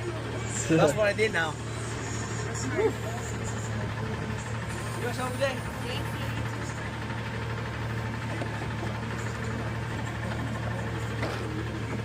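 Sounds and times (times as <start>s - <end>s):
garbage truck engine idling: 0.0s - 12.0s.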